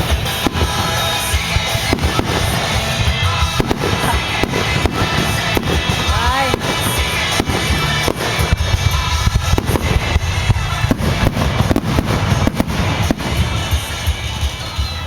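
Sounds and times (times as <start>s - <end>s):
deep rumble: 0.0s - 15.0s
fireworks bangs and booms: 0.0s - 15.0s.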